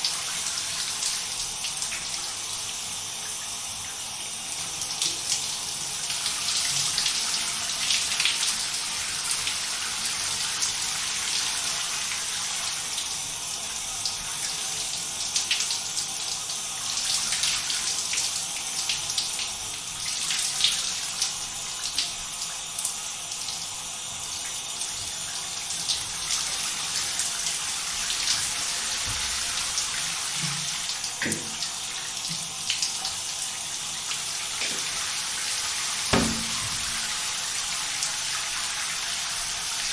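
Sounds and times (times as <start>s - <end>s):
shower water spraying: 25.8s - 39.9s.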